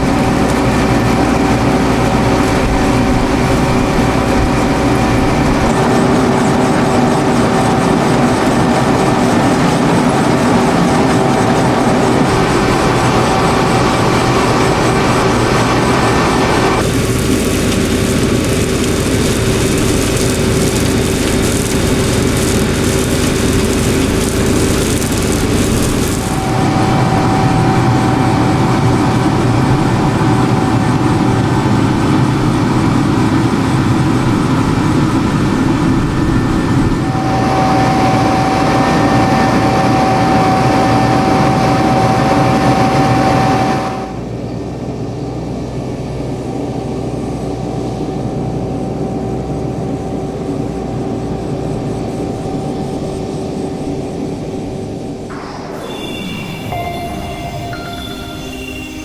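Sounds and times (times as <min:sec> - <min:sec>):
potato harvester running: 0:11.6 - 0:36.9
thin high whine: 0:12.0 - 0:33.2, 0:33.8 - 0:44.4, 0:54.2 - 0:59.0.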